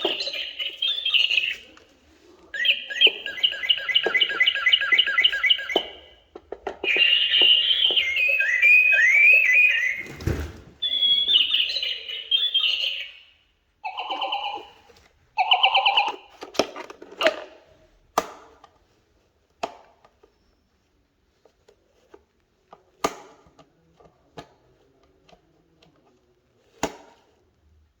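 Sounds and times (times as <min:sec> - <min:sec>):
warbling electronic toy tones: 0:00.0 - 0:01.8, 0:02.6 - 0:06.2, 0:06.8 - 0:10.1, 0:10.8 - 0:16.3.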